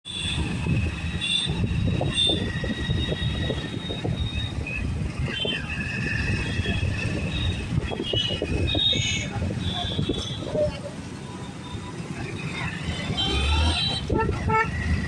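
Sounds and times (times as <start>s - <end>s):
motorcycle engine rumbling: 0.2s - 15.0s.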